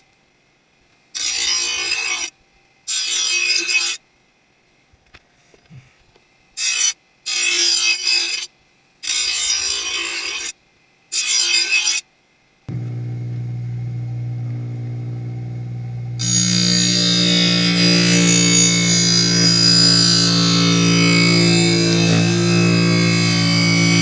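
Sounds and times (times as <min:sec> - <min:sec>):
grinding wheel grinding steel: 0:12.7 - 0:24.0.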